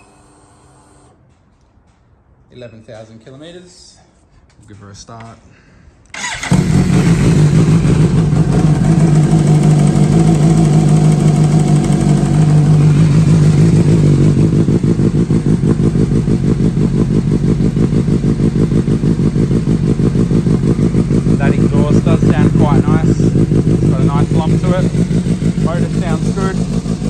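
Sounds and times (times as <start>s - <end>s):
motorcycle engine idling: 6.2s - 27.0s.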